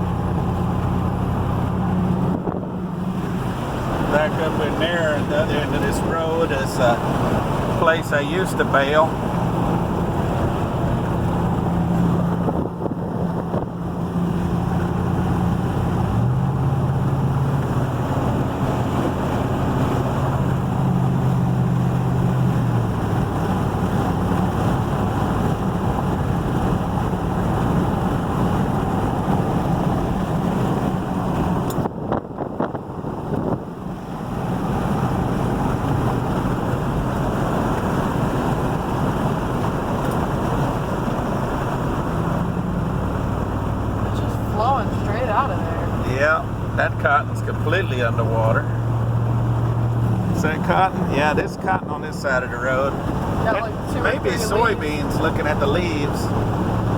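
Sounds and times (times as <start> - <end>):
vehicle engine running: 0.0 - 56.9
tyres hissing on wet road: 2.8 - 12.3, 34.0 - 56.9.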